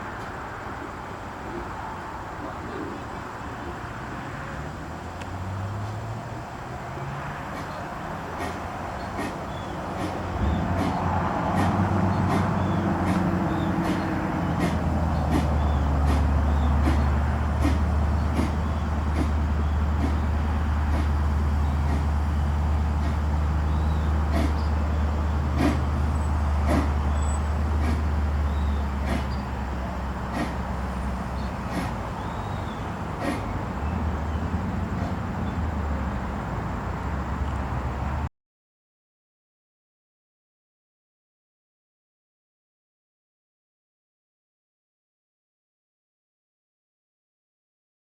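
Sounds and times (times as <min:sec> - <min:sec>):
train rumbling: 0:05.8 - 0:38.2
wheels clicking over rail joints: 0:07.4 - 0:36.2.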